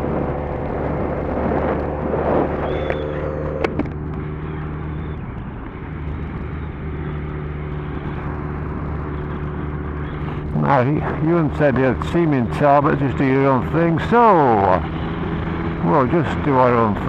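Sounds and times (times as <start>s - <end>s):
wind rushing: 0.0s - 3.8s
motorcycle engine cruising: 0.0s - 17.0s.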